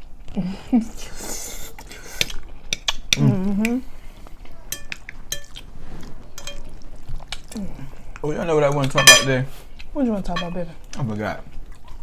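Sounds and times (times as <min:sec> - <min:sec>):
person humming: 0:03.2 - 0:03.9
cutlery clinking on a plate: 0:04.7 - 0:05.6, 0:06.4 - 0:06.7, 0:08.8 - 0:09.5, 0:10.3 - 0:10.6.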